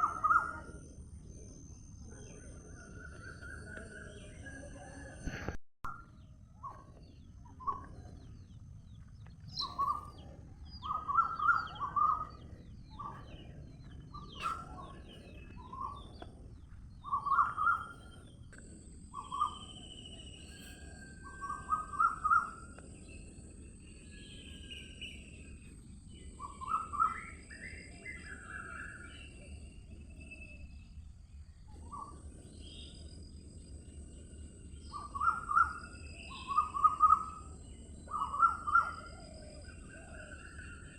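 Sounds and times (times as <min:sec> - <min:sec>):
birds calling: 0:06.6 - 0:29.5, 0:31.8 - 0:40.9.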